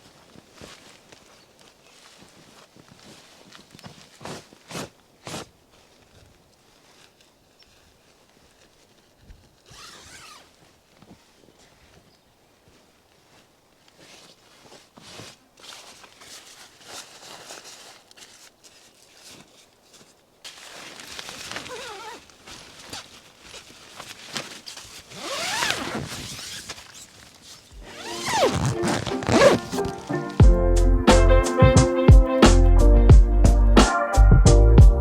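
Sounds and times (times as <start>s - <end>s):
camping gear rustling: 0.0s - 30.4s
zips being pulled: 9.6s - 10.6s, 20.6s - 23.1s, 24.0s - 30.1s.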